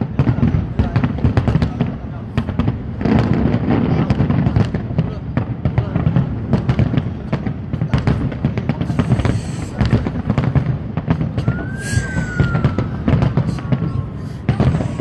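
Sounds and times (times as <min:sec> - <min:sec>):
fireworks bangs and crackles: 0:00.0 - 0:15.0
whistling firework tone: 0:08.9 - 0:15.0.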